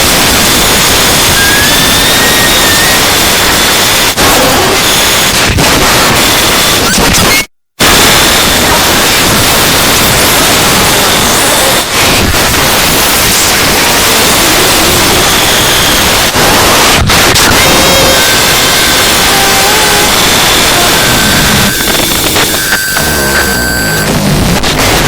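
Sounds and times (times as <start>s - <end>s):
loud harsh static: 0.0s - 25.0s
faint steady tones: 18.0s - 24.2s.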